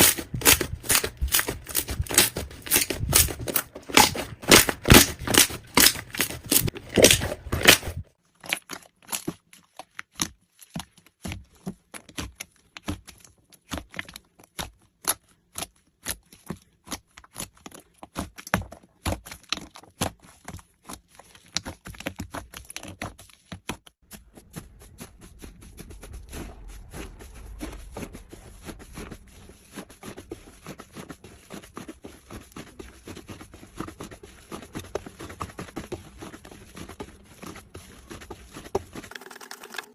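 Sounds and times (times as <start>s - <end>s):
slime popping and crackling: 0.0s - 8.7s
slime squishing: 0.0s - 23.3s.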